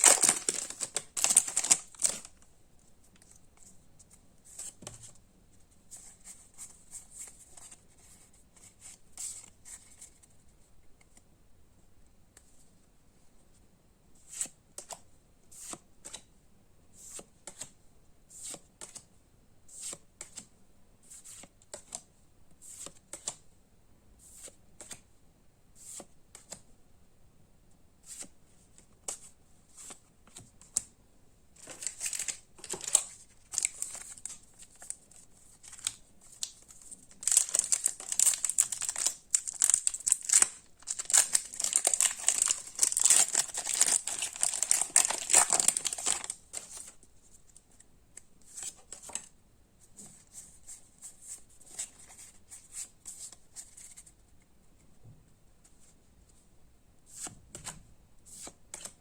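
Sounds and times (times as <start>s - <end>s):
foil wrappers crinkling: 0.0s - 2.3s, 31.6s - 34.9s, 37.1s - 46.4s.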